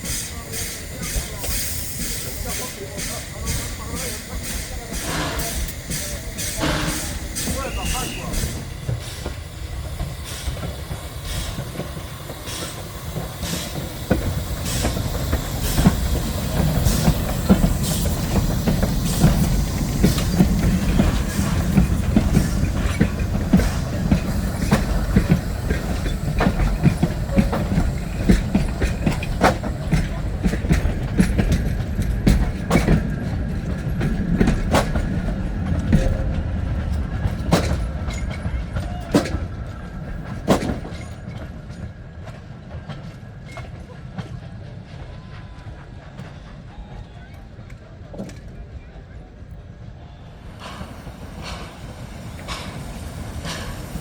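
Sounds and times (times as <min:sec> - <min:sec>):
train rumbling past: 0:00.0 - 0:54.0
wheels clicking over rail joints: 0:00.1 - 0:44.4, 0:50.6 - 0:54.0.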